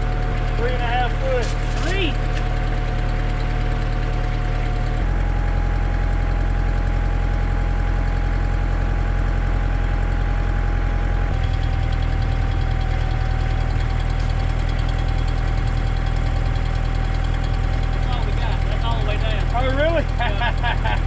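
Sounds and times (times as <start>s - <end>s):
tractor diesel engine running: 0.0s - 21.0s.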